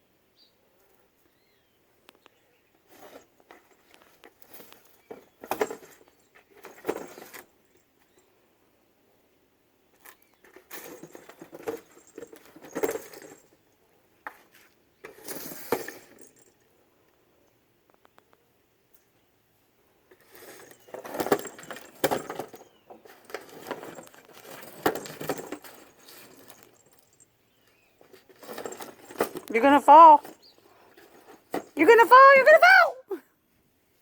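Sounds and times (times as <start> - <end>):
rustling: 2.1 - 8.3, 9.9 - 16.6, 20.0 - 32.6
small objects clinking: 20.1 - 32.2.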